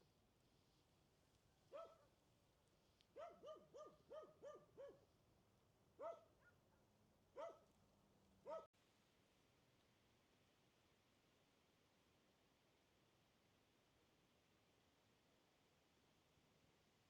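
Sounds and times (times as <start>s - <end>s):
small dog yipping: 1.7s - 2.1s, 3.2s - 5.0s, 6.0s - 6.7s, 7.4s - 7.7s, 8.5s - 8.7s.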